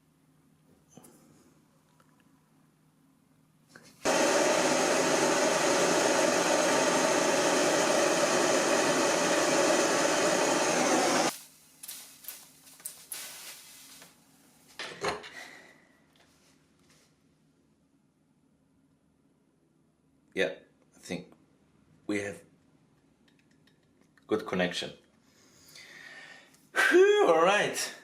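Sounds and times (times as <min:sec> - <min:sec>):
gas torch flame hissing: 0:04.0 - 0:14.1.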